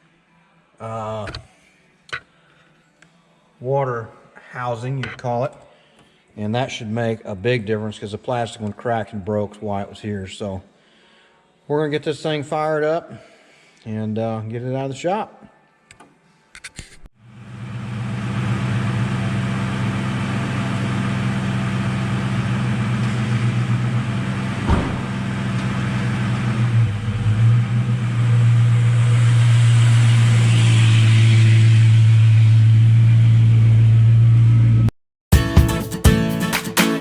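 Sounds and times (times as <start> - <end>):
car engine running: 17.3 - 34.8
acoustic guitar music: 35.3 - 37.0.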